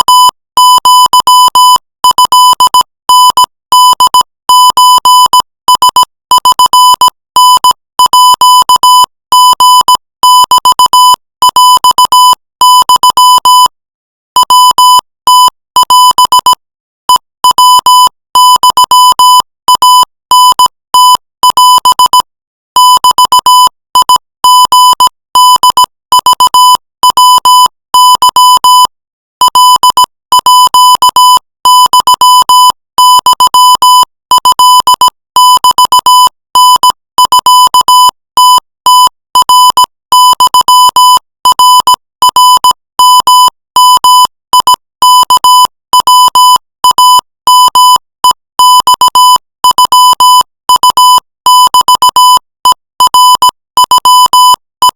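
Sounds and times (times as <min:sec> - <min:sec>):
morse code beeps: 0:00.0 - 0:13.7, 0:22.8 - 0:27.4.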